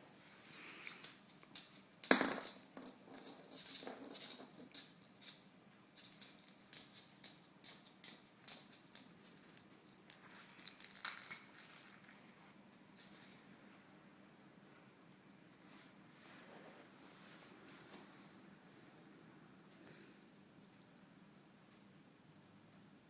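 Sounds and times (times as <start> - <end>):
toy jingling and rattling: 0.4 - 5.4, 6.0 - 8.7, 9.3 - 12.0.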